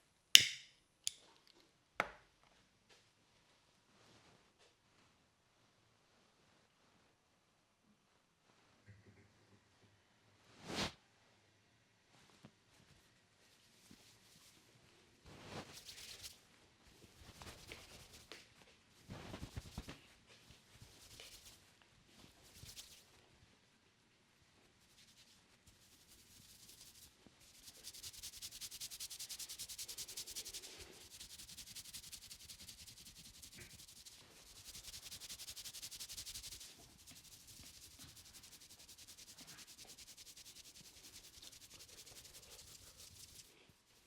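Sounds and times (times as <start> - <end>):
hands rubbing over hair: 15.3 - 16.4, 17.0 - 18.4, 19.0 - 23.1, 24.8 - 44.0.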